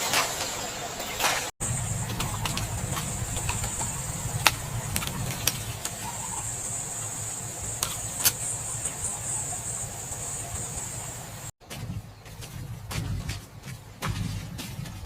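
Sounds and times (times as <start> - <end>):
cricket chorus: 0.0 - 11.5
low rumble: 1.6 - 13.3.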